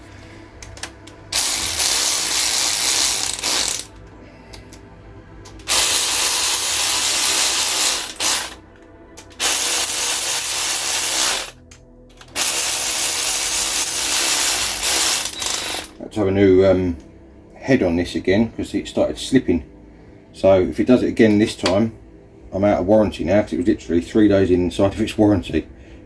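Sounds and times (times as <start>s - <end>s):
electric ratchet running: 0.8s - 3.9s, 5.6s - 8.6s, 9.2s - 11.6s, 12.3s - 16.0s.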